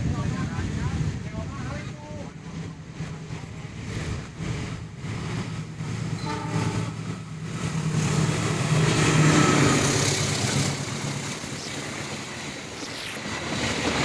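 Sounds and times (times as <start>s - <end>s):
train engine hum: 0.0s - 14.0s
wheels rushing on rails: 0.0s - 14.0s.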